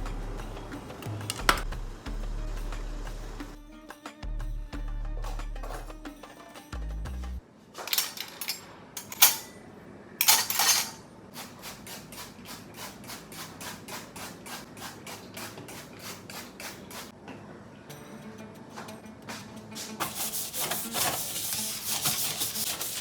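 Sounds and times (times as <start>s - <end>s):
utensil clatter: 7.8s - 9.6s, 10.2s - 11.0s
rhythmic utensil strokes: 19.3s - 23.0s.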